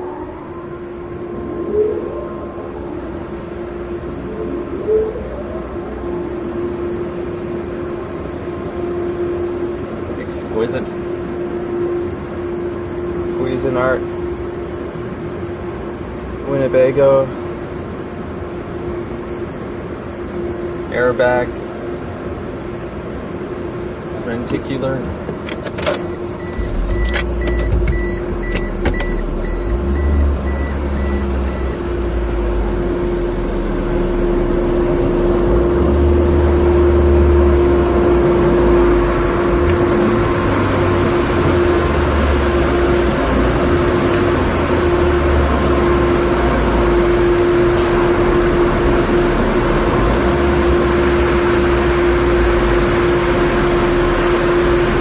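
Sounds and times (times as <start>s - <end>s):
motor vehicle humming: 0.0s - 55.0s
faint high beeps: 26.0s - 36.0s.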